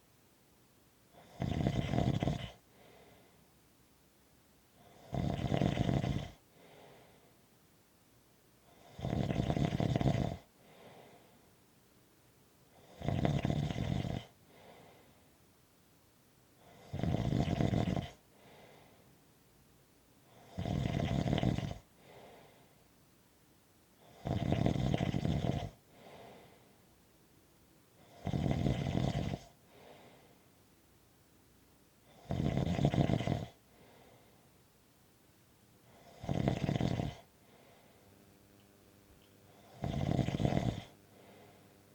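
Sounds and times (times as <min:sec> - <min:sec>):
loud snoring: 0:01.1 - 0:02.6, 0:04.8 - 0:06.4, 0:08.7 - 0:10.5, 0:12.7 - 0:14.4, 0:16.6 - 0:18.2, 0:20.3 - 0:21.9, 0:24.0 - 0:26.3, 0:28.0 - 0:30.0, 0:32.1 - 0:33.6, 0:35.8 - 0:38.2, 0:39.2 - 0:41.9
soft breathing: 0:02.4 - 0:03.6, 0:06.4 - 0:07.5, 0:10.4 - 0:11.6, 0:14.4 - 0:15.4, 0:18.2 - 0:19.2, 0:21.9 - 0:23.0, 0:25.7 - 0:26.9, 0:29.3 - 0:30.6, 0:33.5 - 0:34.7, 0:35.8 - 0:41.9.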